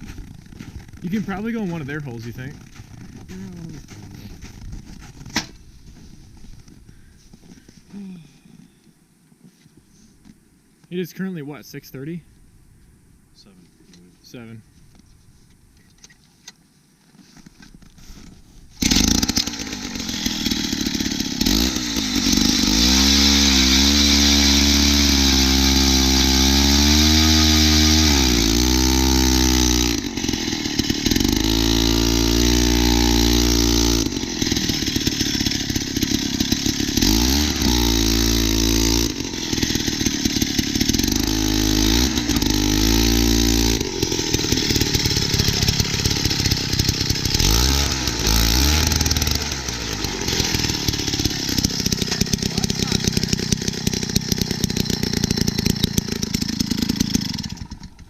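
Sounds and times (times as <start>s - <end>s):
ice auger engine revving: 0.0s - 5.6s, 18.7s - 58.0s.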